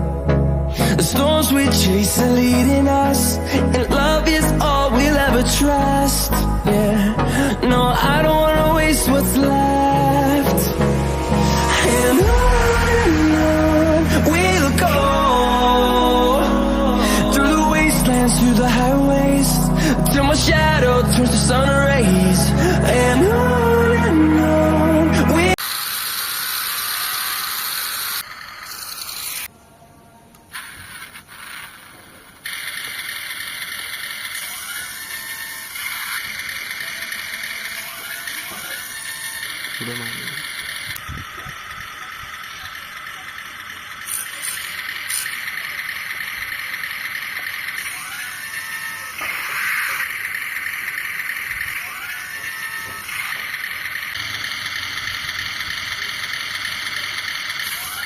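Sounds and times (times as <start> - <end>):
toy truck motor whirring: 25.5 - 29.5, 30.4 - 58.0.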